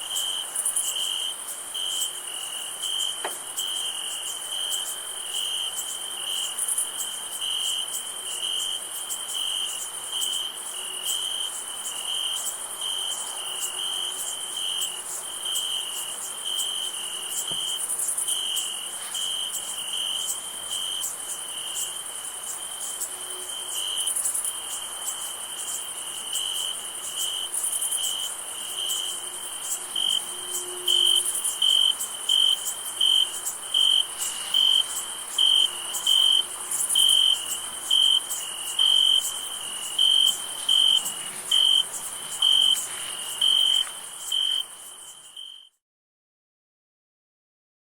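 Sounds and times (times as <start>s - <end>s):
crickets chirping: 0.0s - 45.8s
high-pitched insect drone: 26.4s - 45.8s.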